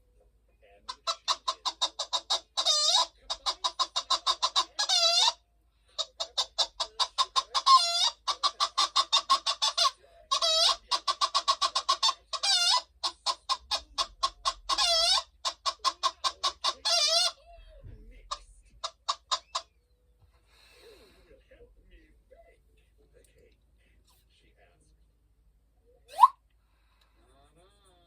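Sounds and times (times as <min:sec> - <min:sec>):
hen cackling: 0:00.9 - 0:17.4, 0:18.3 - 0:19.7, 0:26.1 - 0:26.4.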